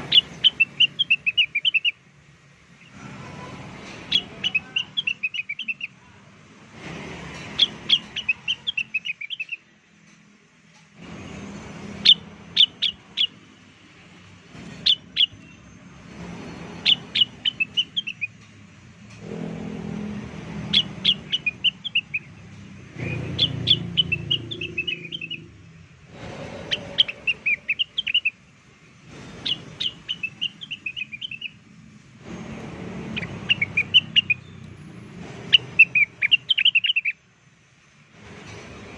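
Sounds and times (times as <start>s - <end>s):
bird chirping song: 0.0s - 2.0s, 3.8s - 6.0s, 7.5s - 9.8s, 11.3s - 13.6s, 14.6s - 18.5s, 20.4s - 37.2s.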